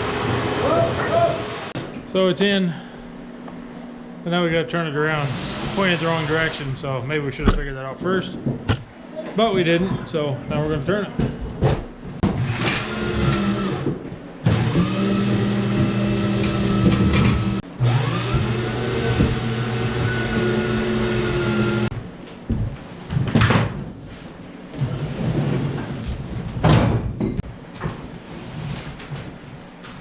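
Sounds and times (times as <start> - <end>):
motor whining and humming: 5.2 - 6.7, 12.4 - 21.9.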